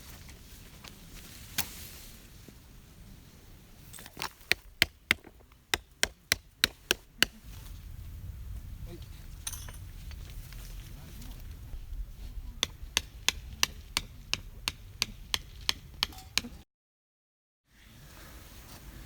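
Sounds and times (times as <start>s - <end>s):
blade chopping strikes: 4.0s - 7.4s, 12.6s - 16.6s.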